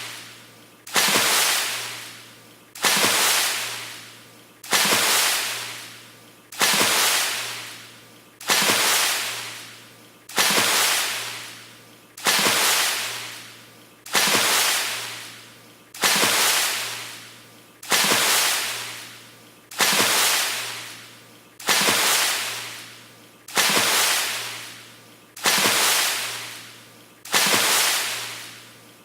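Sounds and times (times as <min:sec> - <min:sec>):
water splashing: 0:00.9 - 0:02.1, 0:02.8 - 0:04.0, 0:04.7 - 0:05.8, 0:08.4 - 0:09.6, 0:10.3 - 0:11.5, 0:12.2 - 0:13.4, 0:14.1 - 0:15.3, 0:16.0 - 0:17.3, 0:17.9 - 0:19.0, 0:19.7 - 0:22.9, 0:23.5 - 0:24.8, 0:25.4 - 0:26.7, 0:27.3 - 0:28.6.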